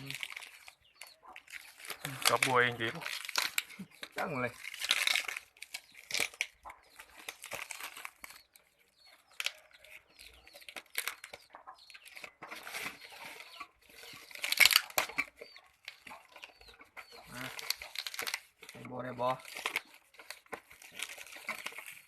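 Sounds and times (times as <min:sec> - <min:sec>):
packaging crinkling: 0:00.0 - 0:22.0
chickens clucking: 0:08.4 - 0:18.0.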